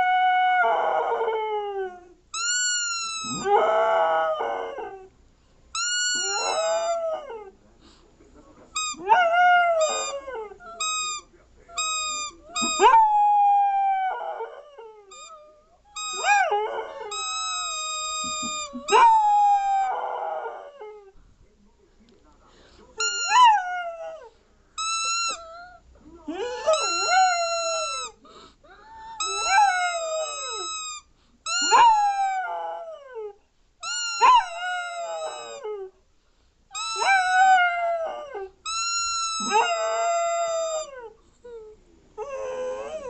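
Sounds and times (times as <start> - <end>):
dog howling: 3.2 - 5.1, 6.2 - 7.5, 9.0 - 10.6, 12.4 - 21.1, 26.4 - 28.1, 29.0 - 30.7, 31.6 - 33.3, 34.2 - 35.9, 36.8 - 38.6, 39.4 - 41.1.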